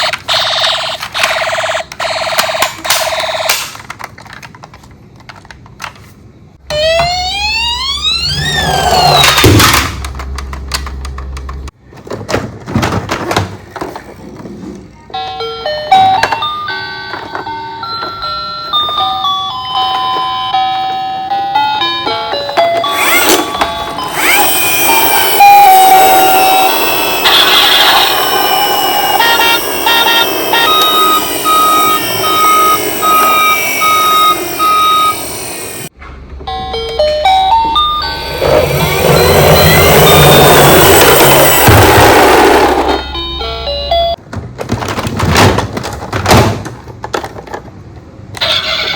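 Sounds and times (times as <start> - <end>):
toy vehicles clicking and knocking: 1.0 - 6.1, 44.5 - 48.9
toy electronic beeping melody: 6.7 - 9.5, 21.4 - 35.9, 36.5 - 44.2
repeated beep tone: 37.5 - 41.7
quick run of short tones: 37.8 - 42.8.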